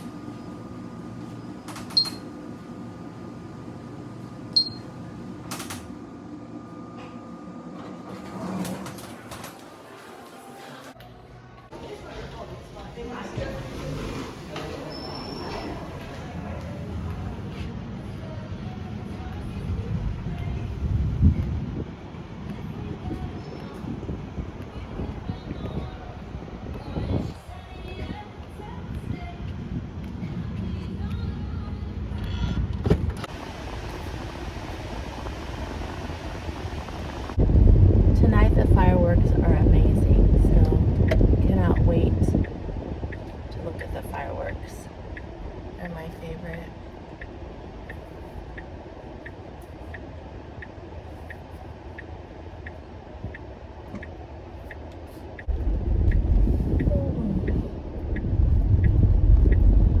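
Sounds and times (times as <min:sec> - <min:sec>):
car engine and road noise: 0:16.4 - 0:45.8, 0:46.5 - 1:00.0
turn signal ticking: 0:40.7 - 0:45.4, 0:46.5 - 1:00.0
car engine and road rumble: 0:46.5 - 1:00.0.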